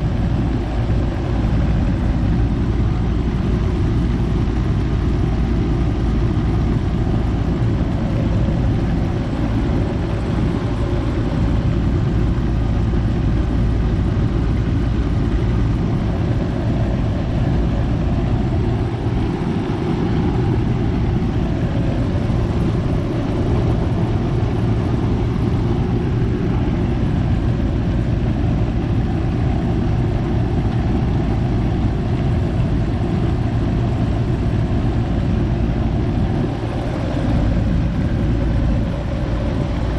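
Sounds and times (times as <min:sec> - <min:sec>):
air conditioner unit running: 0:00.0 - 0:39.9
fan rushing noise: 0:00.0 - 0:39.9
low steady hum: 0:00.0 - 0:39.9.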